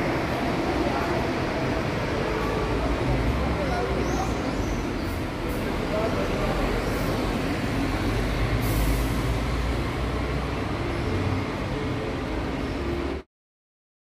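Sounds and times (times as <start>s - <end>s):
rumble of passing vehicles: 0.0s - 13.3s
brief hiss: 8.6s - 9.4s.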